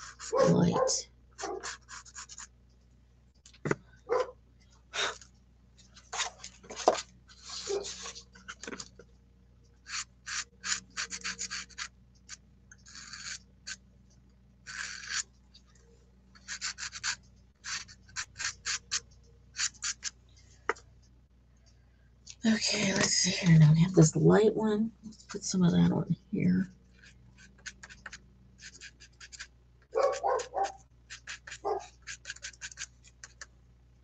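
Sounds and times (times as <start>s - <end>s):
pastel scratching on paper: 1.4s - 2.5s, 7.4s - 8.2s, 9.9s - 11.9s, 12.9s - 13.4s, 16.5s - 19.0s, 19.6s - 20.1s, 27.0s - 33.4s.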